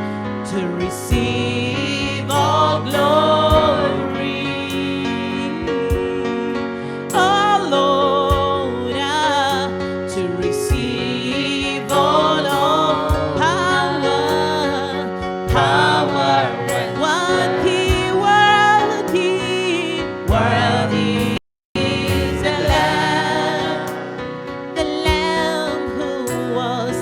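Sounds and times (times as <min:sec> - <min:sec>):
sustained keyboard chords: 0:00.0 - 0:27.0
drum hits: 0:22.1 - 0:23.2.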